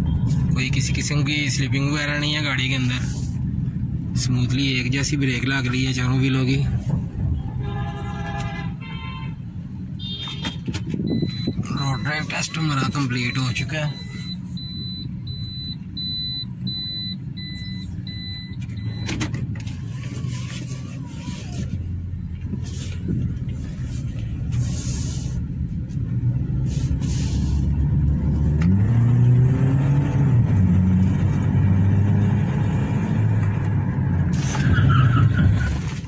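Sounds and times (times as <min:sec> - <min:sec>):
car engine: 0:00.0 - 0:08.8, 0:09.4 - 0:36.0
road noise: 0:00.0 - 0:36.0
repeating electronic beep: 0:11.1 - 0:19.1.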